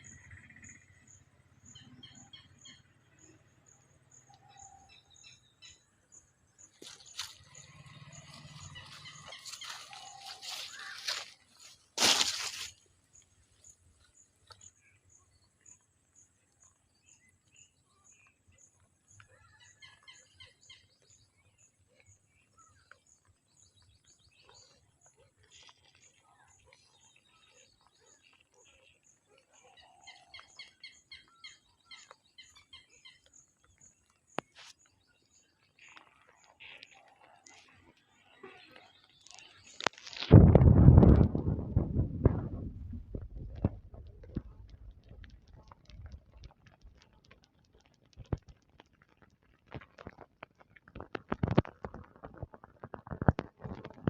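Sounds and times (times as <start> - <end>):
small bird chirps: 0.0 - 11.8.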